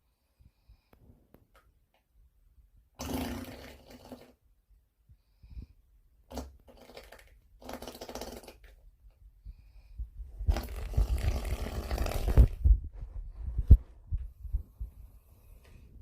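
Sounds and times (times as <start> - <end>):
rough noise with low thumps: 10.0 - 15.1.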